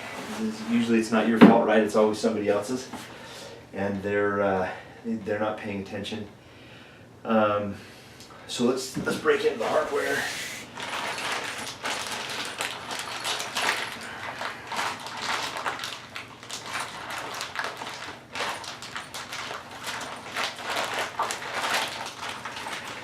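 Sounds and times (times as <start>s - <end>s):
packaging rustling and crinkling: 9.1s - 23.0s.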